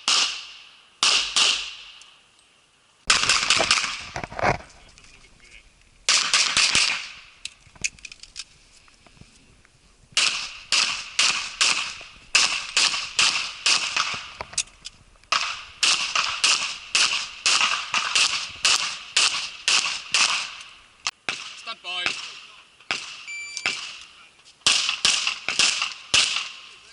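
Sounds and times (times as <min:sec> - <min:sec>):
pistol shots: 0:00.0 - 0:01.9, 0:03.1 - 0:04.2, 0:06.1 - 0:07.2, 0:10.2 - 0:14.6, 0:15.3 - 0:20.7, 0:21.3 - 0:24.0, 0:24.6 - 0:26.7.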